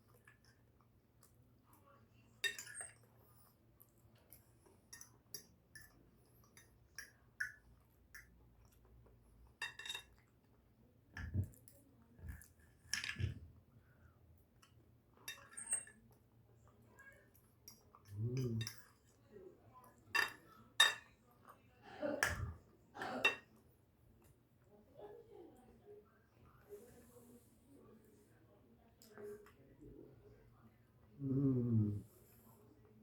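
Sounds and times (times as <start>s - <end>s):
cutlery clinking on a plate: 2.4s - 3.1s, 9.6s - 10.3s, 15.2s - 16.1s, 20.1s - 21.2s
chewing: 17.3s - 19.2s.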